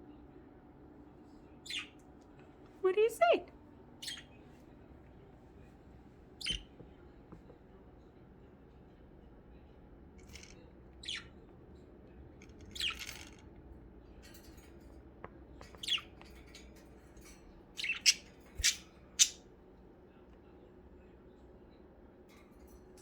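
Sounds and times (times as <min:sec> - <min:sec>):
budgerigars chirping: 0:04.0 - 0:04.4, 0:06.4 - 0:06.6, 0:17.8 - 0:19.4.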